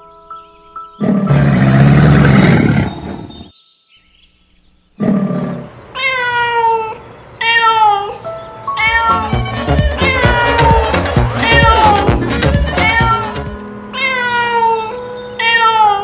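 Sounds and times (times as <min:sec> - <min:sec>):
animal growling: 0:01.0 - 0:03.4, 0:05.0 - 0:05.7
meowing calls: 0:08.8 - 0:13.4, 0:14.0 - 0:16.0.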